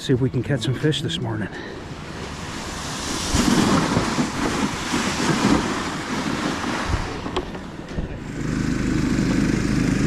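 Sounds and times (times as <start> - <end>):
wind gusting across microphone: 1.8 - 8.4
small engine running: 2.3 - 10.0.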